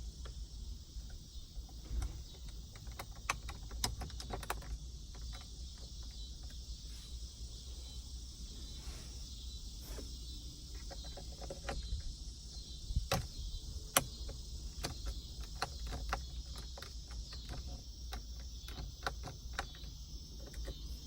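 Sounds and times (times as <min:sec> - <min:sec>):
insects chirring: 0:00.0 - 0:21.0
plastic knobs clicking: 0:01.0 - 0:06.6, 0:13.0 - 0:21.0.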